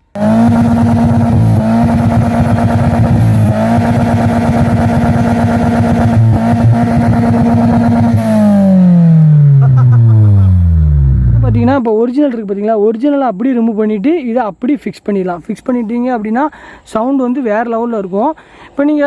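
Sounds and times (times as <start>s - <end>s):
car engine revving: 0.0s - 11.8s.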